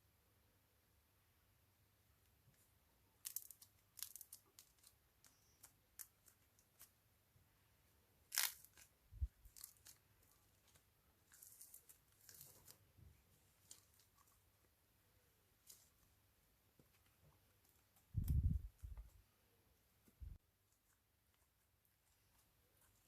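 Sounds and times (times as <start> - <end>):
slime tearing crackle: 8.3 - 8.9.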